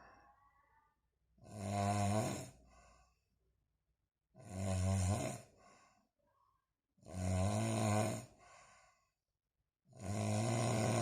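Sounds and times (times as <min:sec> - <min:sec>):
man snoring: 0:01.4 - 0:02.7, 0:04.4 - 0:05.6, 0:07.0 - 0:08.5, 0:09.9 - 0:11.0.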